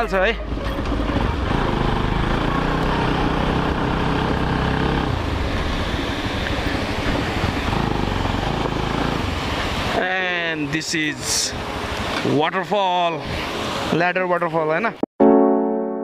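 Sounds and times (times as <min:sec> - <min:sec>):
motorcycle engine running: 0:00.4 - 0:09.9.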